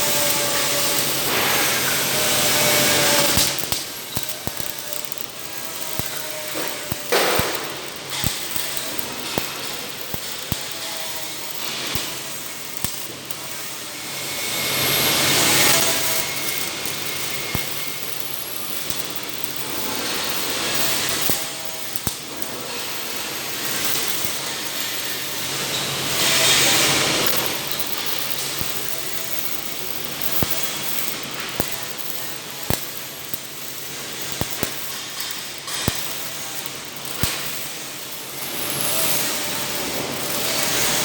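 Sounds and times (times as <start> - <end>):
welding hissing and crackling: 0.0 - 41.0
sharp clicks: 3.2 - 10.8, 15.7 - 22.4, 27.2 - 33.0, 34.2 - 37.5.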